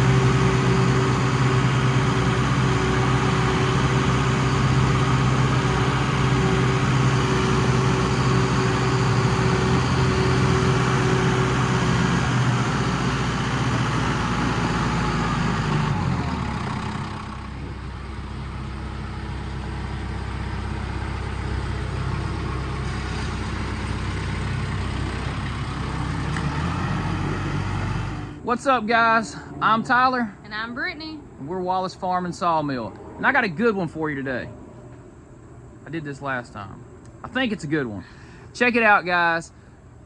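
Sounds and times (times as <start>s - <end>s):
engine running and idling: 0.0s - 28.5s.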